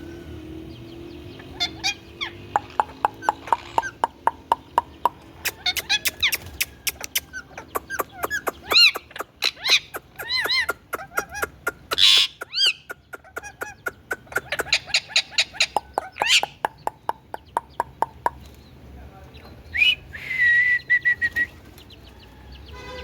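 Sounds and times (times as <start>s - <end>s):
parakeet chirping and squawking: 1.3s - 18.6s.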